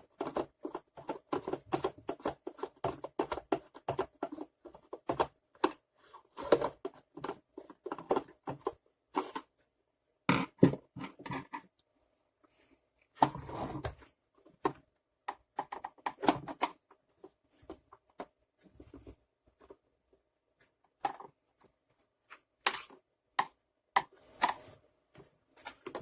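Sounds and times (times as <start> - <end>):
plastic parts clicking and knocking: 0.0 - 9.6, 10.2 - 11.8, 13.2 - 26.0
plastic parts scraping: 0.0 - 9.6, 13.1 - 19.8.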